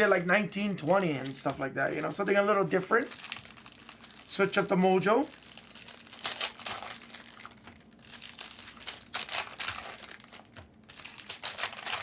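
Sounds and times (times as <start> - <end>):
foil wrappers crinkling: 0.0 - 12.0.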